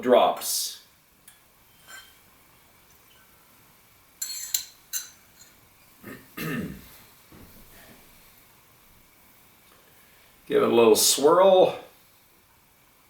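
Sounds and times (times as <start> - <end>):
glass clinking: 1.2 - 2.2, 4.2 - 5.6
person clearing throat: 6.0 - 7.0.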